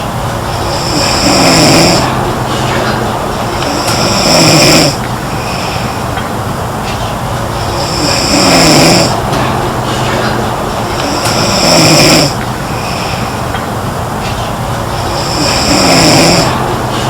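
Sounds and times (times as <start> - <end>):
girl snoring: 0.6 - 3.0, 3.6 - 5.6, 7.8 - 9.2, 11.0 - 13.0, 15.1 - 16.6.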